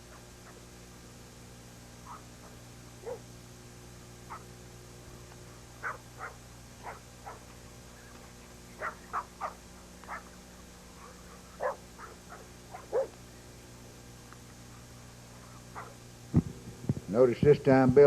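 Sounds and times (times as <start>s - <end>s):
low hum: 0.0s - 18.0s
dog barking: 2.0s - 3.3s, 4.3s - 4.5s, 5.8s - 7.5s, 8.8s - 10.3s, 11.0s - 13.2s, 15.7s - 16.0s.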